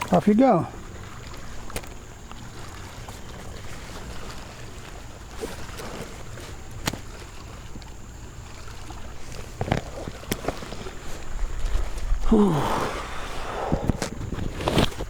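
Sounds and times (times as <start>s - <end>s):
water lapping against kayak hull: 0.0s - 15.0s.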